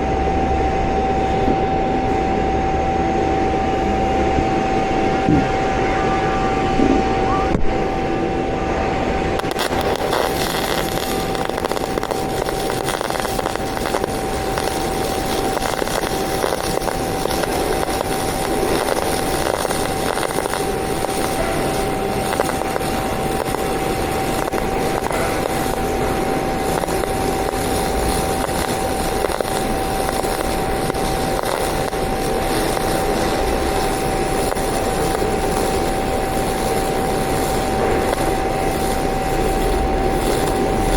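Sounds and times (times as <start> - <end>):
welding arc crackling: 9.3 - 40.9.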